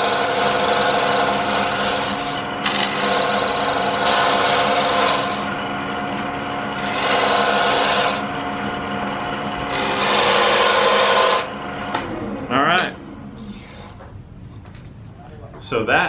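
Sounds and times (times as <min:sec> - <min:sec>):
tool scraping spinning wood: 0:00.0 - 0:11.8
wood lathe motor humming: 0:00.0 - 0:12.0.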